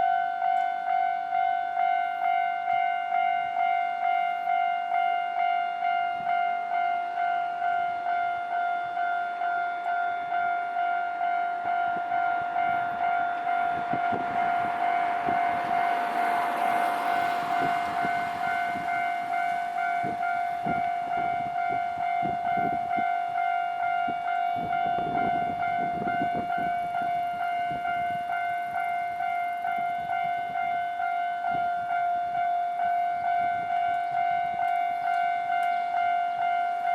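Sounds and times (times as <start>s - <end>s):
level-crossing warning bell ringing: 0.0s - 36.9s
train rushing past: 10.0s - 30.8s.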